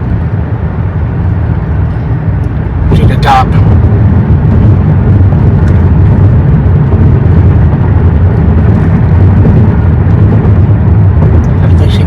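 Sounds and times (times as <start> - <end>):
car road and wind noise: 0.0 - 12.0.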